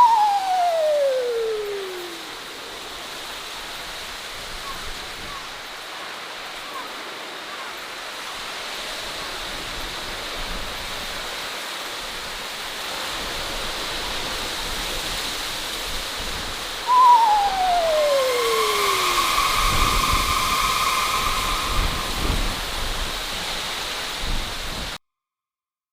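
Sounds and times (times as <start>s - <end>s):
long wavering wail: 0.0s - 2.4s, 16.9s - 23.5s
steady rushing hiss: 17.8s - 24.9s.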